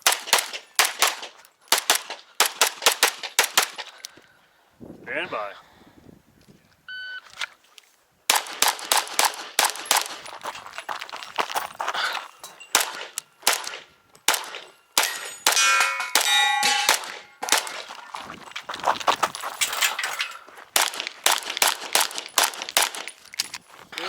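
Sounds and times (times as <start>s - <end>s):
pistol shots: 0.0s - 3.9s, 8.3s - 10.2s, 12.7s - 17.9s, 20.8s - 23.1s
steel targets clanging: 12.1s - 17.9s, 19.4s - 20.5s.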